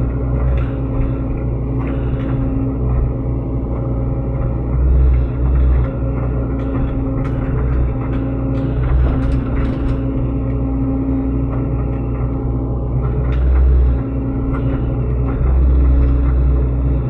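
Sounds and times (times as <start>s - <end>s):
excavator diesel engine running: 0.0s - 17.0s
sharp knocks and clanks: 3.8s - 10.5s.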